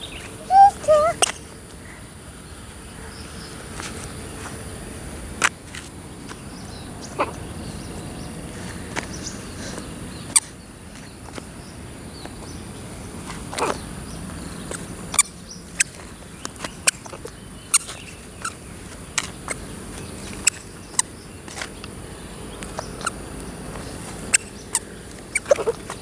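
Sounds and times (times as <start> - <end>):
birds chirping faintly: 0.0 - 26.0
outdoor background noise: 0.0 - 26.0.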